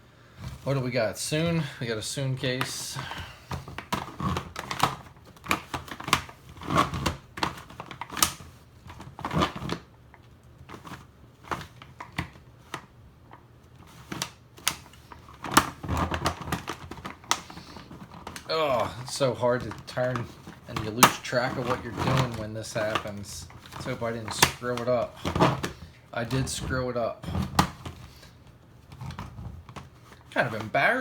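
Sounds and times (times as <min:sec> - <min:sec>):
plastic puzzle cube clacking: 0:13.9 - 0:26.7.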